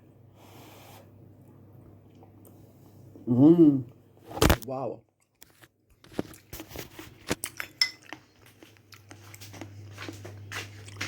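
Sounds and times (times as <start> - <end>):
faint steady hum: 0.0 - 11.0
cutlery clinking on a plate: 7.4 - 8.2.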